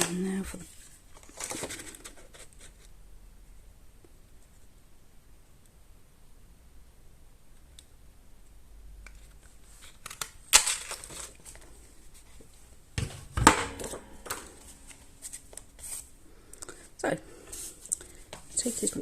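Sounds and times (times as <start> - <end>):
paper rustling: 0.0 - 2.9, 9.2 - 12.6.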